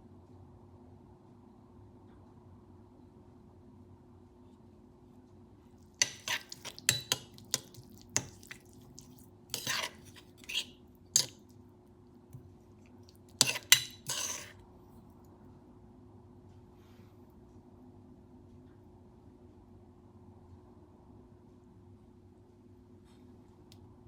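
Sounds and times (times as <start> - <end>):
utensils clinking against dishes: 6.0 - 11.4, 13.4 - 14.6
utensils scraping dishes: 6.0 - 11.4, 13.4 - 14.6.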